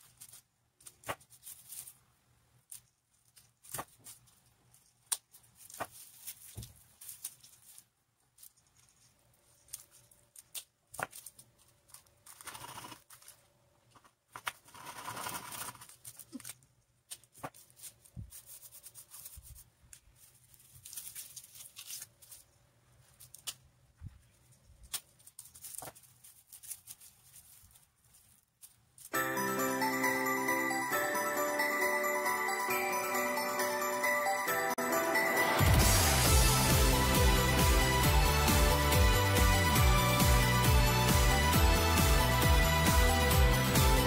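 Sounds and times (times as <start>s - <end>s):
materials rustling: 0.0s - 29.2s.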